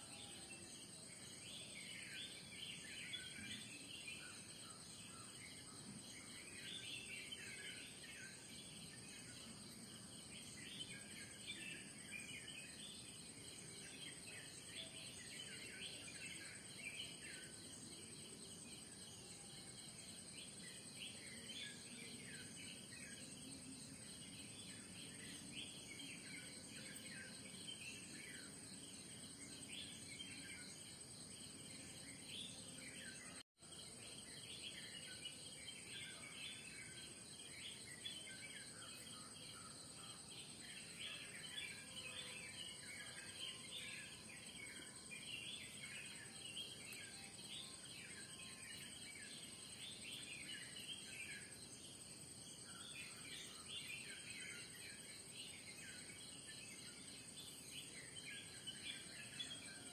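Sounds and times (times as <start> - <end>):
small birds chirping: 0.0 - 59.9.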